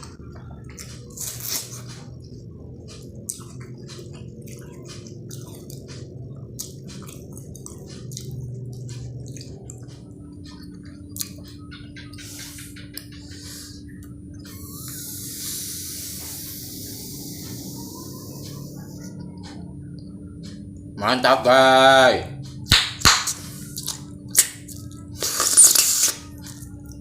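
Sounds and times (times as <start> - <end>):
wet chewing of soft food: 0.0 - 11.6, 23.3 - 27.0
steady low hum: 0.0 - 27.0.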